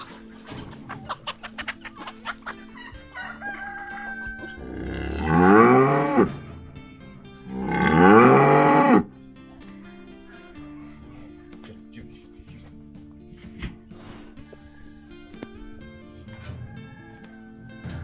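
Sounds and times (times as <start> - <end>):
chicken clucks: 0.0 - 4.6
soft background music: 0.0 - 18.0
rooster crowing: 2.8 - 5.0, 14.4 - 15.4, 16.4 - 18.0.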